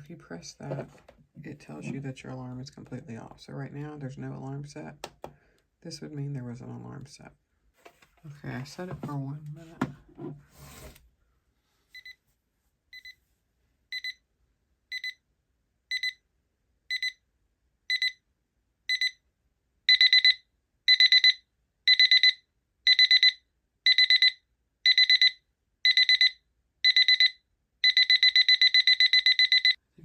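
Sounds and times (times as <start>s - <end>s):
alarm clock beeping: 13.9s - 14.2s, 14.9s - 15.2s, 15.9s - 16.2s, 16.9s - 17.2s, 17.9s - 18.2s, 18.9s - 19.2s, 19.9s - 29.8s.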